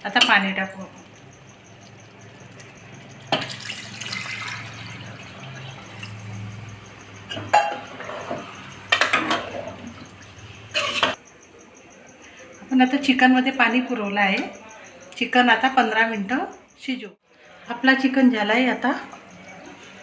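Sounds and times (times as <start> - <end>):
water pouring into a pan: 1.8 - 6.8.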